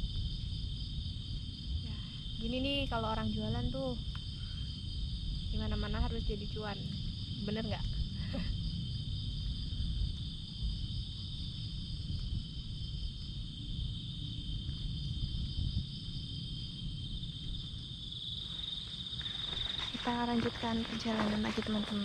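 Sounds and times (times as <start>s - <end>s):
insects buzzing: 0.0s - 22.0s.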